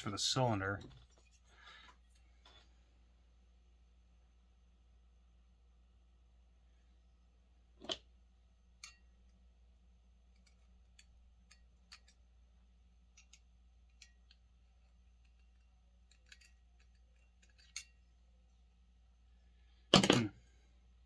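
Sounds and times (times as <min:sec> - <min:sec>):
clicks of small parts handled: 0:10.3 - 0:12.2, 0:13.1 - 0:18.0
parts clattering: 0:13.1 - 0:18.2, 0:19.8 - 0:20.4.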